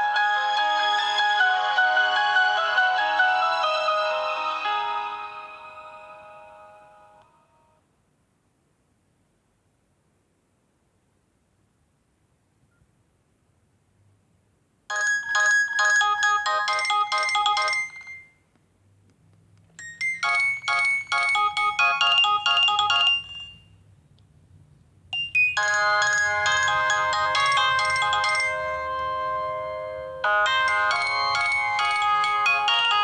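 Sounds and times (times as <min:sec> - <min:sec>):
electronic ringtone melodies: 0:00.0 - 0:07.2, 0:14.9 - 0:18.3, 0:19.8 - 0:23.7, 0:25.2 - 0:33.0.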